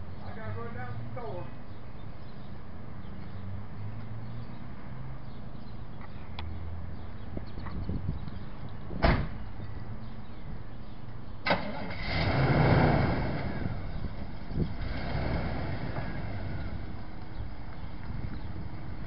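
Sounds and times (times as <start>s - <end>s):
vehicle engine revving: 11.5s - 19.0s.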